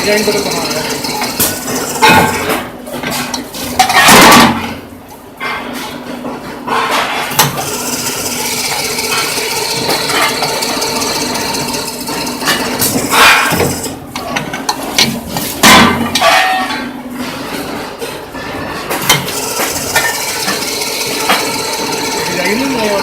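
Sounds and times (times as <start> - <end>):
drilling machine motor hum: 7.6 - 13.9, 19.3 - 23.0.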